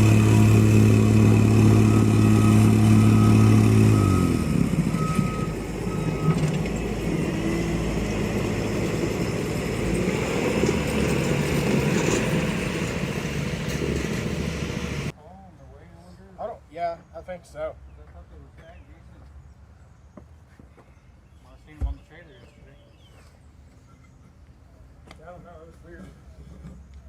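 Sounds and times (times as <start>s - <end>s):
heavy equipment engine running: 0.0s - 15.1s
backup alarm beeping: 1.0s - 6.5s.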